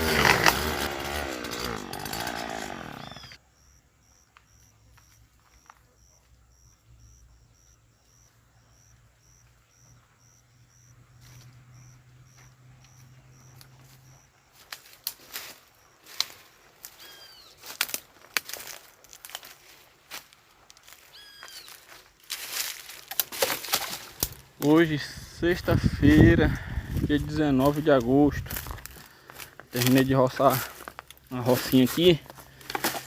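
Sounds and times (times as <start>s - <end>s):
brush cutter engine running: 0.0s - 3.4s, 27.6s - 33.0s
faint high chirp: 3.0s - 14.4s, 15.8s - 17.6s, 21.1s - 21.8s.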